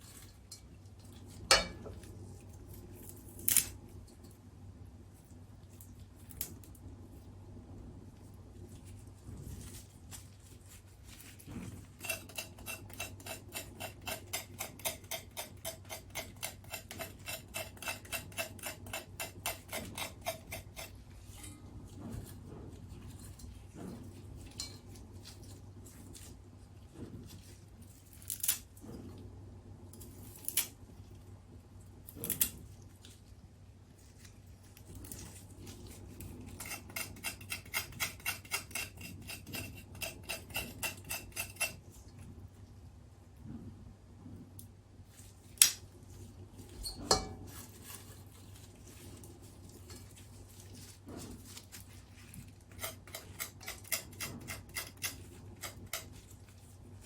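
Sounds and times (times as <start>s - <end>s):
metal kitchen tool strokes: 11.9s - 21.6s, 36.5s - 41.9s, 46.8s - 48.2s.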